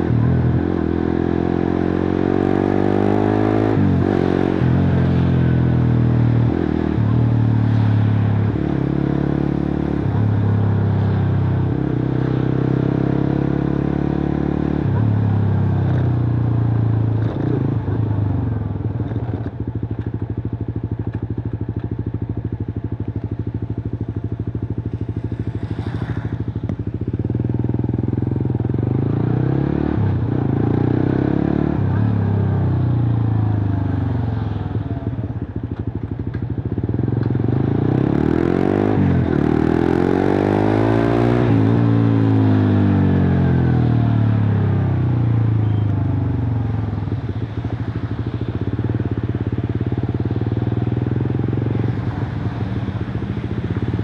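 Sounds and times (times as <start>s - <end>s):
motorcycle engine revving: 36.5s - 54.0s.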